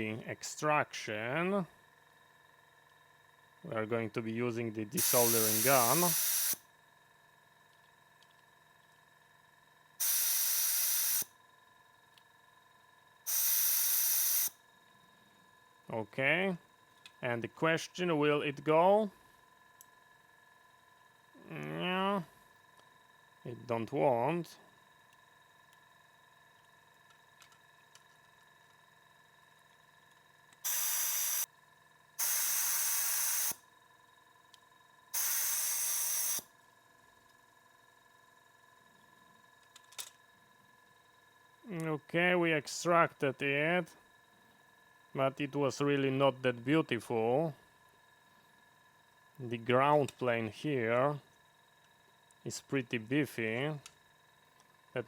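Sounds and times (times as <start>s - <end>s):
desoldering pump hiss: 0.0s - 31.5s, 32.1s - 55.0s
desoldering pump hissing bursts: 4.6s - 6.7s, 10.0s - 11.3s, 13.2s - 14.7s, 30.6s - 31.5s, 32.2s - 33.6s, 35.1s - 36.5s.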